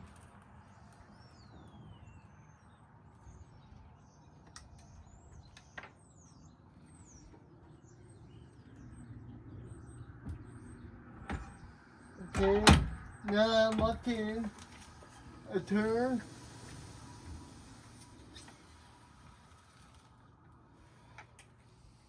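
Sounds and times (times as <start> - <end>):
low rumbling background: 0.6 - 22.0.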